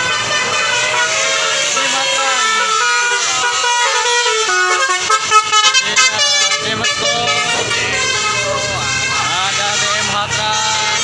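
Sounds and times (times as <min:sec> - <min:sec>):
bus horn playing a tune: 0:00.0 - 0:11.0.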